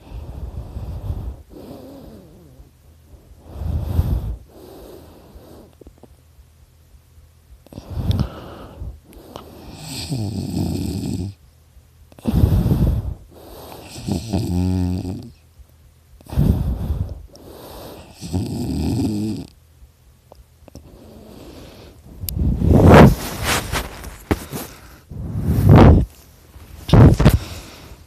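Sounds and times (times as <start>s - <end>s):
person snoring: 0.1s - 2.7s, 7.7s - 11.4s, 12.2s - 15.4s, 16.2s - 19.5s, 20.8s - 23.1s.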